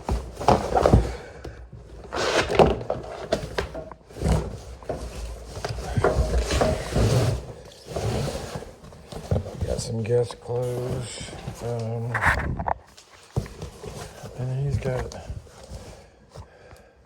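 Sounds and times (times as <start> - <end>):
rustling: 0.0 - 16.4.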